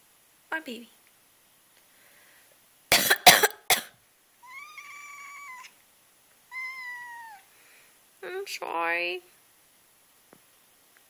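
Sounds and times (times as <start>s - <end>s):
person coughing: 2.9s - 3.9s
cat meowing: 4.4s - 5.8s, 6.5s - 7.5s.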